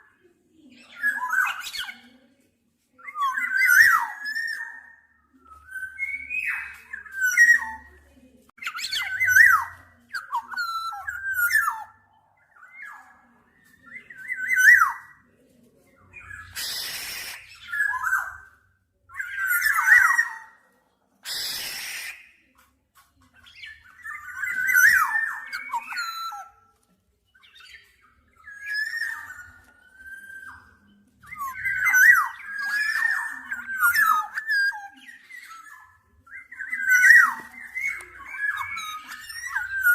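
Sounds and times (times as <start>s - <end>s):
bird singing fluty whistles: 16.2s - 18.3s, 21.2s - 22.4s, 23.9s - 26.5s, 27.6s - 39.9s.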